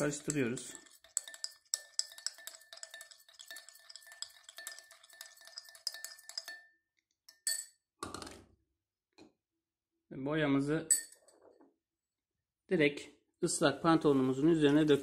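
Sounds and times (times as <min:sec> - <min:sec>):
spoon clinking in container: 0:00.0 - 0:07.8.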